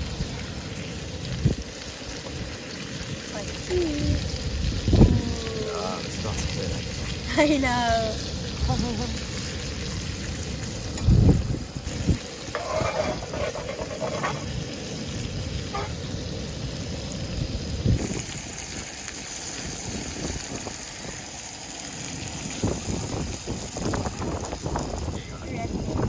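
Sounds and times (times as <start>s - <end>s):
fish frying in butter: 0.0s - 26.0s
wind noise on microphone: 1.3s - 1.7s, 3.7s - 5.6s, 10.8s - 13.6s, 17.4s - 18.8s, 19.6s - 21.2s, 22.4s - 26.0s.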